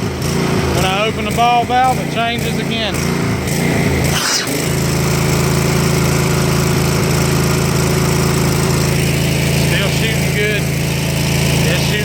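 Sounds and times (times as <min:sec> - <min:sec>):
pressure washer engine running: 0:00.0 - 0:12.0.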